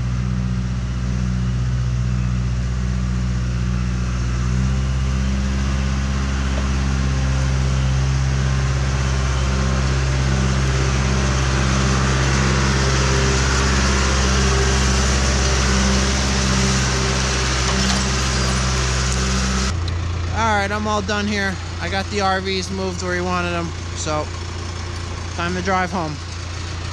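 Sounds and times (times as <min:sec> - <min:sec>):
backhoe diesel engine running: 0:00.0 - 0:26.9.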